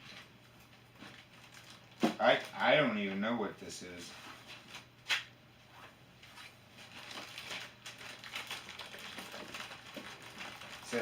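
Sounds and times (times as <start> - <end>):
packaging rustling: 0.0 - 2.6, 6.8 - 11.0.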